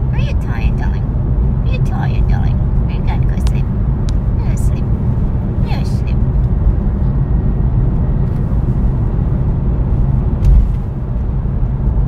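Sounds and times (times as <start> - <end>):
road and engine rumble in car: 0.0 - 12.0
low thump: 10.4 - 10.9.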